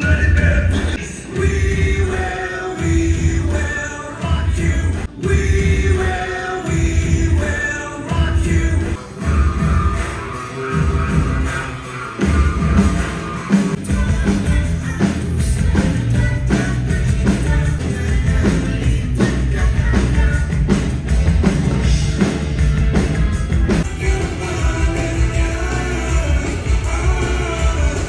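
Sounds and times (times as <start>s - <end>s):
loud live rock music: 0.0s - 28.0s
steady drum beat: 0.0s - 28.0s.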